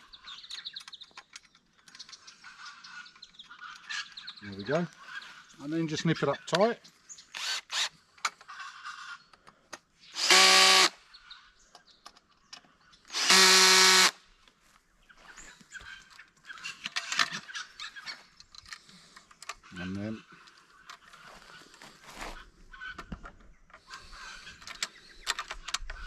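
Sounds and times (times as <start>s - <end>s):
cordless drill running: 7.4s - 7.9s, 10.2s - 11.0s, 13.1s - 14.2s.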